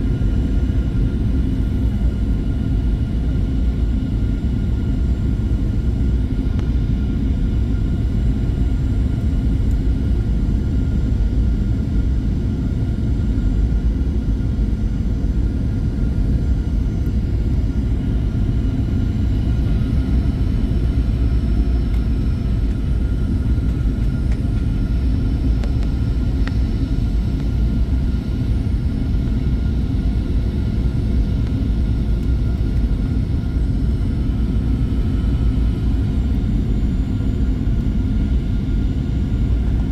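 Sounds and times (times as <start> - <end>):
airplane cabin engine rumble: 0.0 - 39.9
faint steady whines: 0.0 - 39.9.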